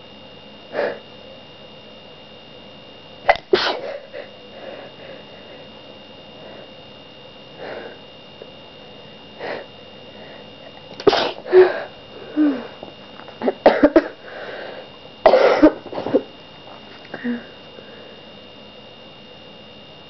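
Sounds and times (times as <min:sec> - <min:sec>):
person sneezing: 0:03.3 - 0:04.3, 0:11.0 - 0:12.7, 0:15.3 - 0:16.3.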